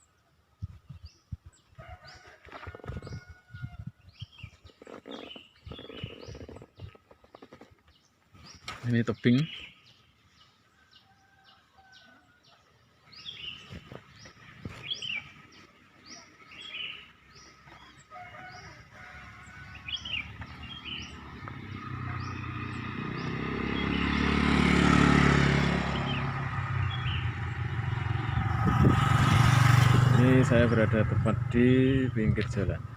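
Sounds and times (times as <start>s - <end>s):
bird chirping: 4.0s - 25.0s, 25.9s - 32.9s
motor vehicle passing: 13.1s - 32.9s.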